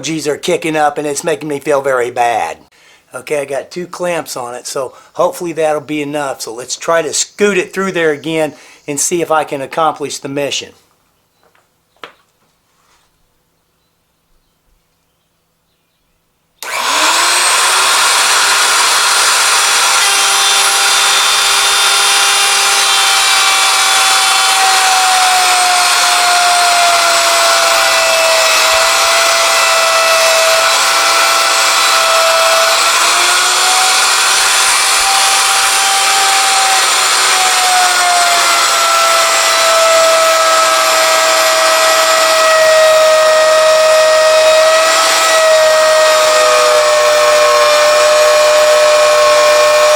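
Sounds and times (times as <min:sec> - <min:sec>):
electric router cutting wood: 0:16.6 - 0:49.9.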